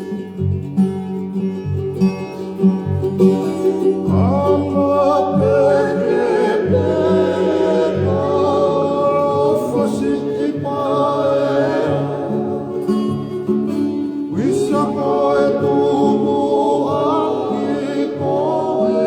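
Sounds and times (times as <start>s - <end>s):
guitar playing low notes: 0.0s - 19.0s
group singing in harmony: 3.1s - 19.0s.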